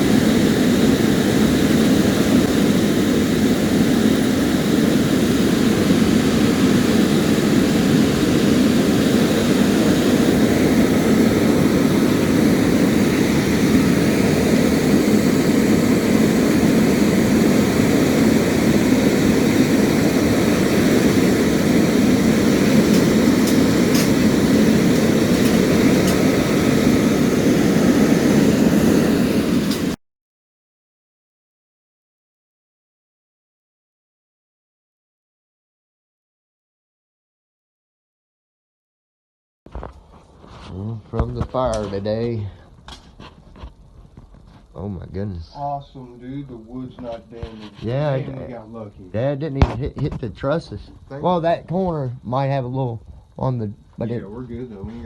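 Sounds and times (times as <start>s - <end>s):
loud mechanical engine drone: 0.0s - 30.0s.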